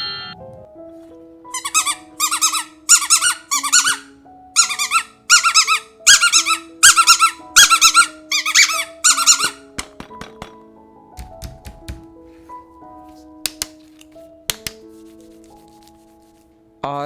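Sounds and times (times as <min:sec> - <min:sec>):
background music: 0:00.0 - 0:17.0
high-pitched warbling squeaks: 0:01.5 - 0:09.7.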